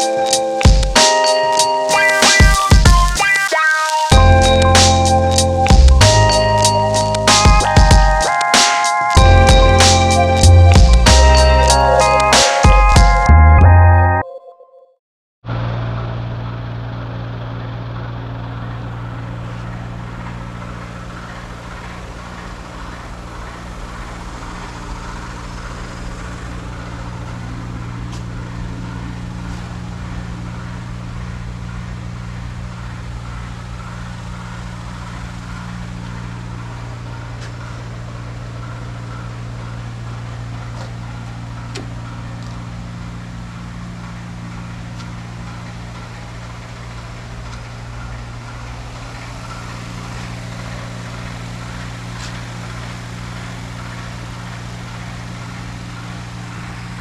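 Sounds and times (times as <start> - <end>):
motor humming: 15.6 - 57.0.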